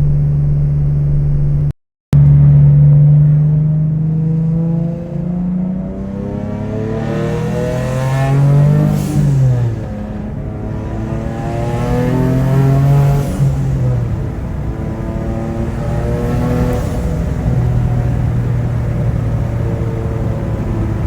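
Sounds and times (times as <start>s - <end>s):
car engine pulling hard: 2.2s - 21.0s.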